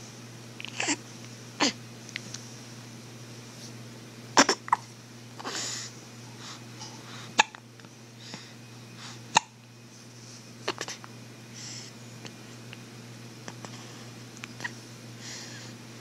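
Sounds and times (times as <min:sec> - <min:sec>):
person hiccuping: 0:04.4 - 0:04.9, 0:07.4 - 0:07.6, 0:09.3 - 0:09.6.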